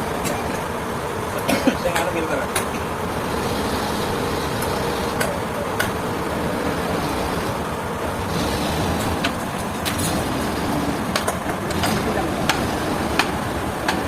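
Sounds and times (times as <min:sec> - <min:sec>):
heavy machinery rumbling: 0:00.0 - 0:14.0.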